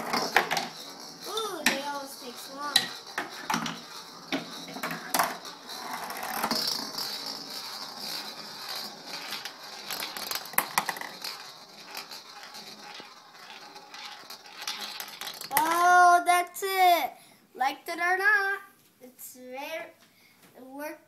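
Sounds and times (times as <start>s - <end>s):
marbles clicking against pieces: 0.0s - 16.1s
marbles rolling and rattling: 0.0s - 16.3s.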